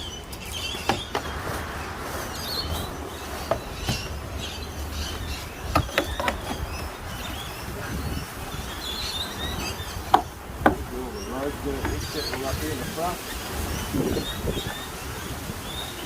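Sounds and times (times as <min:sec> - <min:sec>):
wind rumble on microphone: 0:00.0 - 0:16.0.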